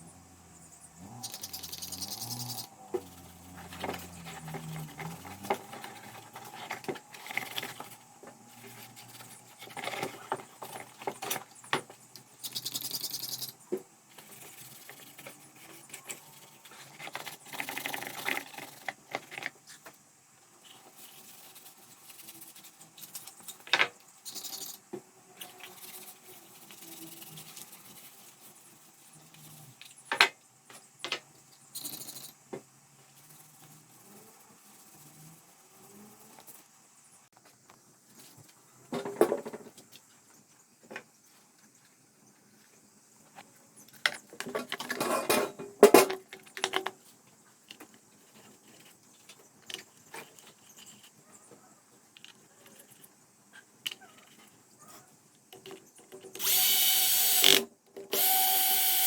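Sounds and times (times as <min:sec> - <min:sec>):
metal tools clinking and scraping: 0:44.6 - 0:46.2.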